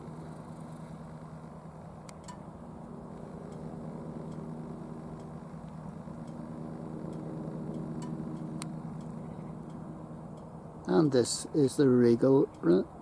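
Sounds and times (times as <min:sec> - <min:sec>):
engine idling hum: 0:00.0 - 0:13.0
faint ticks: 0:02.0 - 0:02.5, 0:03.1 - 0:04.5, 0:05.1 - 0:06.4, 0:07.1 - 0:10.5.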